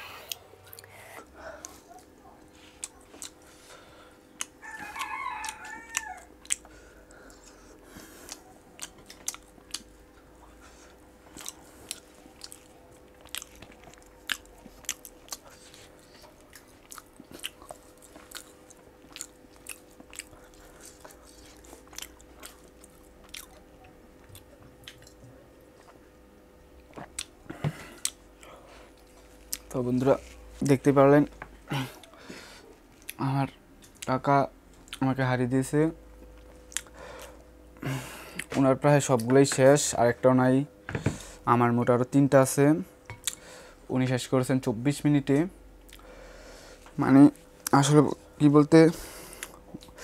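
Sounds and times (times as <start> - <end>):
crunchy chewing: 2.7 - 3.7, 4.3 - 23.6, 26.8 - 30.7.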